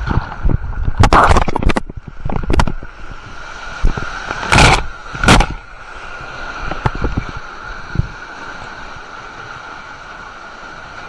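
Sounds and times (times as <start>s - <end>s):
water rushing down a slide: 0.0s - 11.0s.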